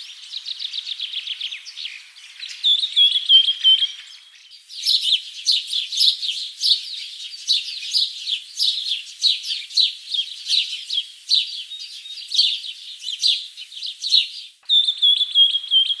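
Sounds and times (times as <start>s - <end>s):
birds chirping: 11.7s - 16.0s
rapid bird trill: 14.7s - 16.0s.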